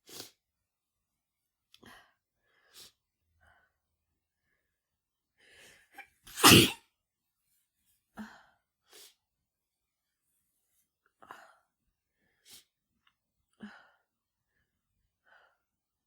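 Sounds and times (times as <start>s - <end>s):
woman sneezing: 6.3s - 6.8s.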